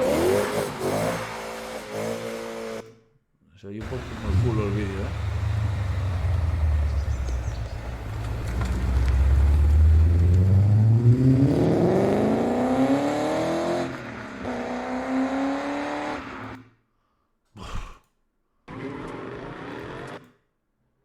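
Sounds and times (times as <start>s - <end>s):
car engine accelerating hard: 3.8s - 16.2s.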